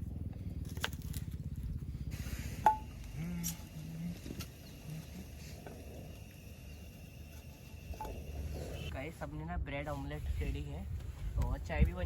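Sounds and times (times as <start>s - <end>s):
low fluttering rumble: 0.0s - 12.0s.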